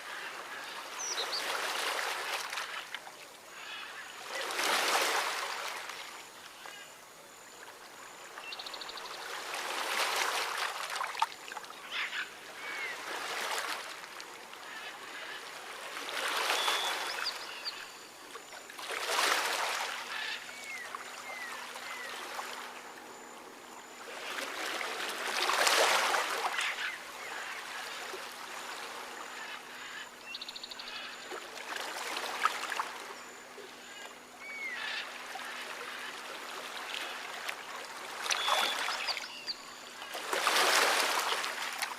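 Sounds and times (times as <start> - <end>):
rushing water: 9.4 - 18.0, 31.2 - 39.3, 40.0 - 41.9
whistled bird calls: 16.5 - 18.0, 34.4 - 35.0, 38.3 - 39.7.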